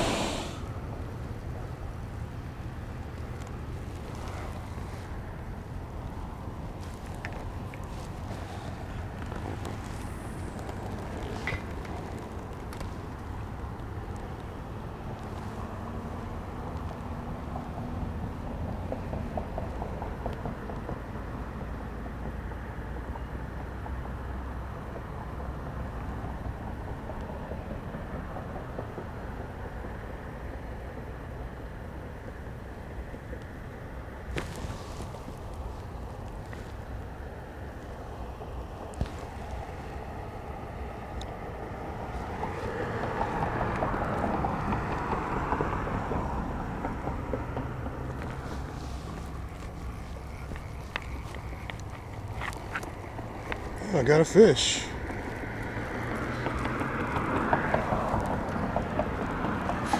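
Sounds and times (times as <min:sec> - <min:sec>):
hiss: 0:00.0 - 0:00.8
low outdoor rumble: 0:23.8 - 0:59.9
faint ticks: 0:47.1 - 0:53.8.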